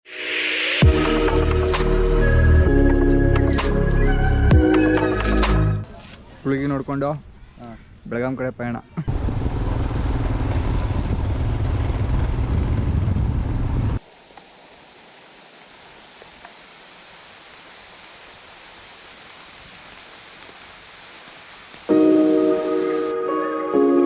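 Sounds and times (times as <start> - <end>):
motorcycle engine rumble: 9.1 - 14.0
wind noise on microphone: 9.2 - 14.0
steady hiss: 14.0 - 24.0.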